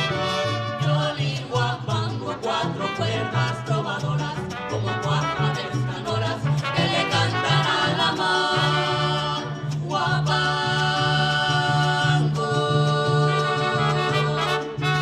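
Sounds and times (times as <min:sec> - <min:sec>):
voices singing held notes: 0:00.0 - 0:15.0.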